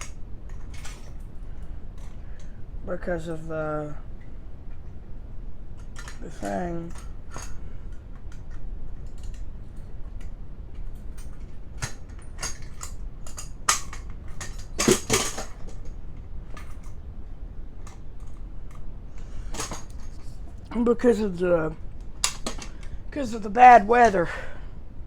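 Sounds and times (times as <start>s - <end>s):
objects clattering: 11.2s - 17.0s, 19.2s - 20.7s, 22.2s - 23.3s.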